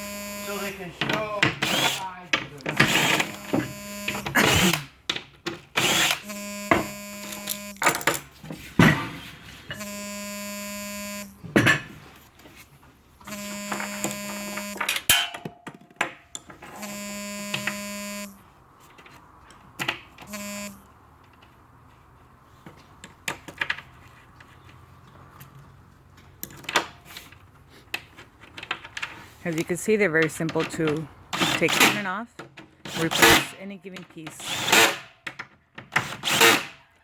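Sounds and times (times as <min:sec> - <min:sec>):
small electric motor buzzing: 0:00.0 - 0:01.0, 0:01.6 - 0:02.1, 0:02.8 - 0:04.9, 0:05.8 - 0:07.9, 0:09.7 - 0:11.5, 0:13.3 - 0:14.8, 0:16.7 - 0:18.4, 0:20.3 - 0:20.8.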